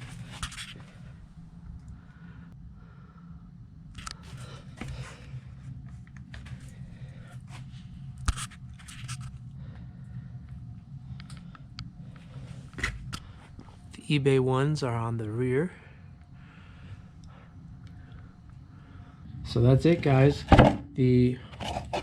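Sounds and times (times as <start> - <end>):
light scraping and handling: 0.0 - 1.0, 5.9 - 9.4
steady low hum: 0.0 - 22.0.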